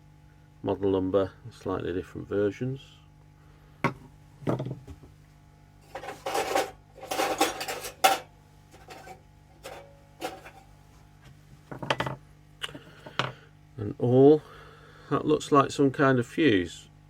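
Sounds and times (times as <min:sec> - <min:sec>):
metal tools clattering: 0:05.8 - 0:10.7.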